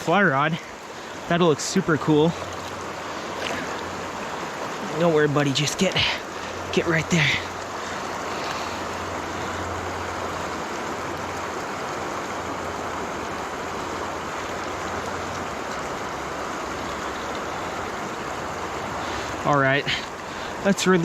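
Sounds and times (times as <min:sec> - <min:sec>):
fast river current rushing: 0:00.0 - 0:21.0.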